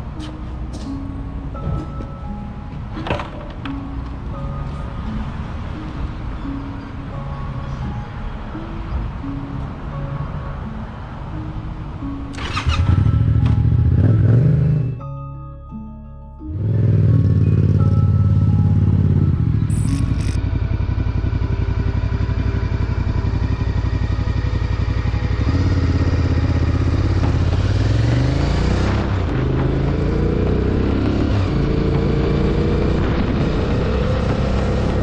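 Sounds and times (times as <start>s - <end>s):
motorcycle engine accelerating: 12.3s - 15.0s, 16.5s - 35.0s.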